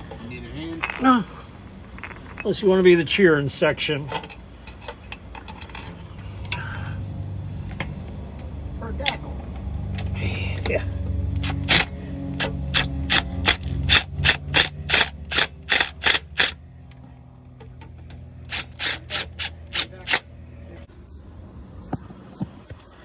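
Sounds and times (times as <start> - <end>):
ratchet wrench clicking: 11.4 - 16.6, 18.5 - 20.2.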